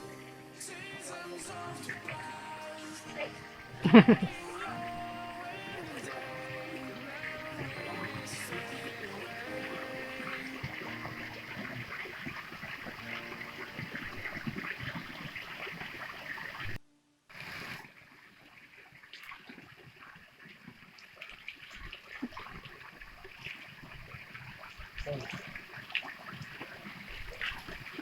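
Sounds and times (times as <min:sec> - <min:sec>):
stream water splashing over rocks: 0:03.6 - 0:28.0.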